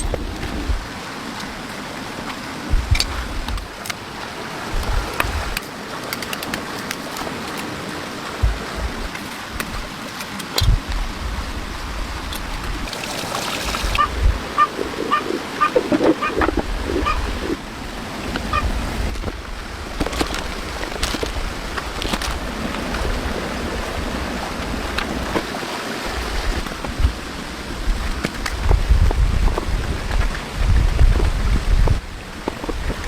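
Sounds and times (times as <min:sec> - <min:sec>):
wind on microphone: 0:00.0 - 0:05.6, 0:08.2 - 0:10.0, 0:10.6 - 0:33.0
rustles and clicks: 0:18.3 - 0:23.1.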